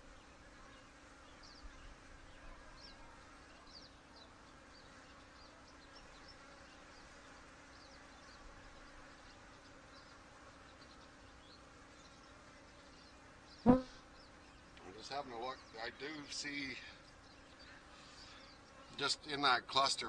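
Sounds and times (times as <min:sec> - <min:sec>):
honey bees humming: 0:03.7 - 0:19.5.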